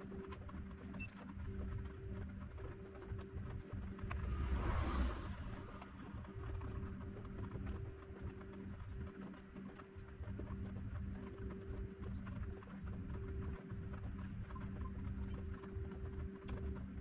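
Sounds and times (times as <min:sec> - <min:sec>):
low electrical hum: 0:00.0 - 0:17.0
low rumble: 0:03.4 - 0:08.4.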